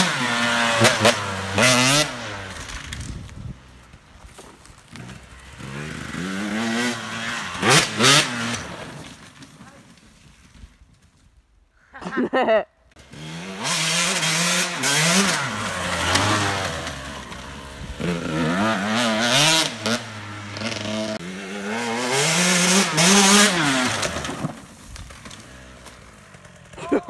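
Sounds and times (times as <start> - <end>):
dirt bike engine revving: 0.0 - 3.2, 4.9 - 9.0, 13.0 - 27.0.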